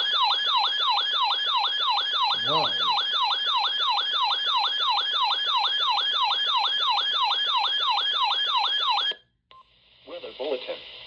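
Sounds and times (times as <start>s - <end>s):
emergency alert broadcast: 0.0s - 4.7s
electronic yelp siren: 0.0s - 9.2s.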